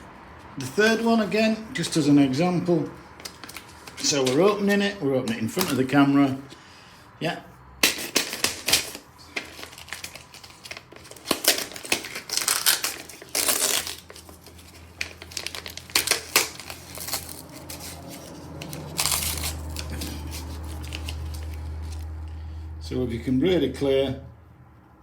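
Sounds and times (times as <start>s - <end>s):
plastic packaging crinkling and tearing: 3.0s - 6.1s, 7.8s - 22.1s.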